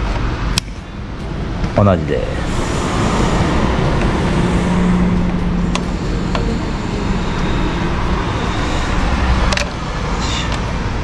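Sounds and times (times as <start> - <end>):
car engine humming: 0.0 - 11.0.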